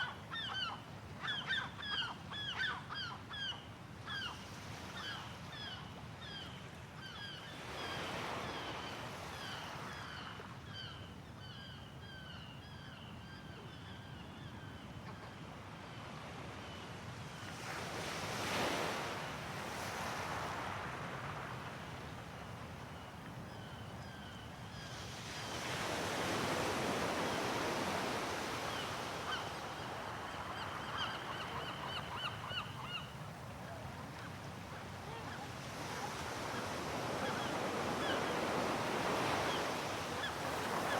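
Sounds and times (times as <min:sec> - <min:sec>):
sea waves washing ashore: 0:24.9 - 0:40.9
gulls calling: 0:28.0 - 0:40.9.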